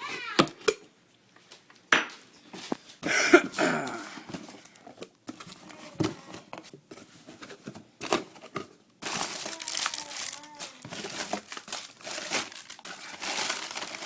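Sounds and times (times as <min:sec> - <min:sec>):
packaging rustling: 0:07.3 - 0:14.0.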